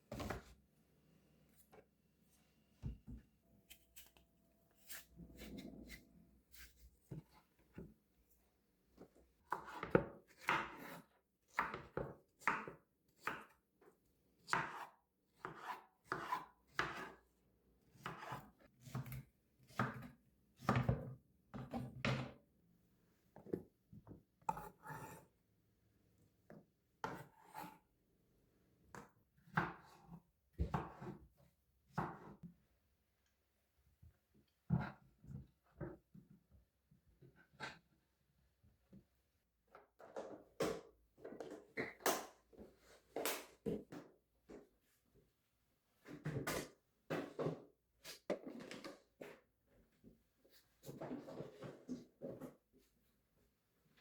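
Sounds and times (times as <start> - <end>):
knife chopping on wooden board: 14.5 - 14.8, 15.4 - 17.2.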